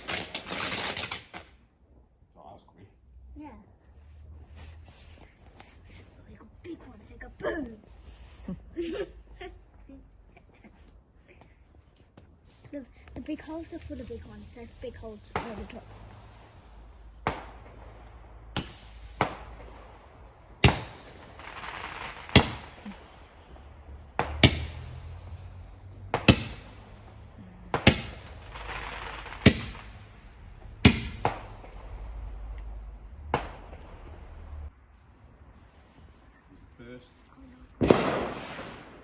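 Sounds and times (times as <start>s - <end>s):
firework bangs: 0.0s - 1.6s, 13.5s - 34.8s, 37.8s - 39.0s
firework fizzing hiss: 0.0s - 1.6s, 13.5s - 34.5s.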